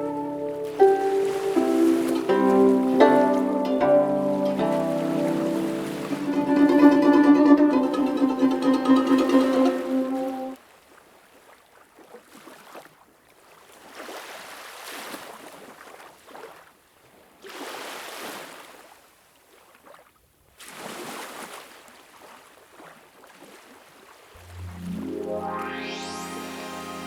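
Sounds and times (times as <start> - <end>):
surf washing on a shore: 0.0 - 10.5
music: 0.0 - 10.6, 24.4 - 27.0.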